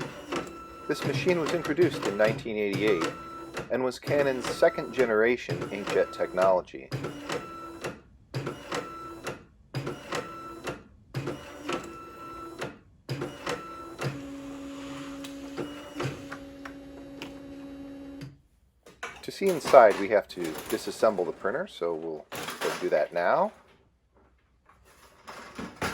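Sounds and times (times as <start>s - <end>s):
printer carriage motor clicking: 0.0s - 14.4s, 15.2s - 18.4s
printer motor hum: 0.0s - 18.3s.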